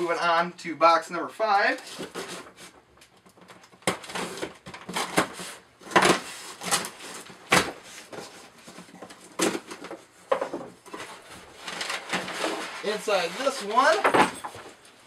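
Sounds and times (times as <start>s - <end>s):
packaging ripping and scraping: 1.7s - 2.8s, 3.4s - 9.9s, 10.9s - 14.0s.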